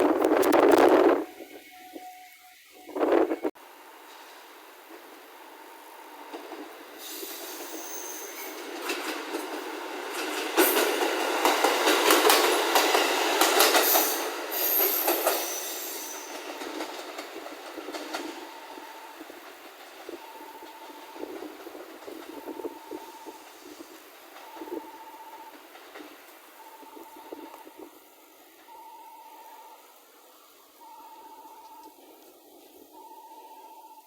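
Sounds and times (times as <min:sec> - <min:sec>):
train passing: 0:00.0 - 0:33.8
wheels clacking over rail joints: 0:06.3 - 0:27.8
high wheel squeals: 0:07.0 - 0:08.6, 0:13.8 - 0:16.9.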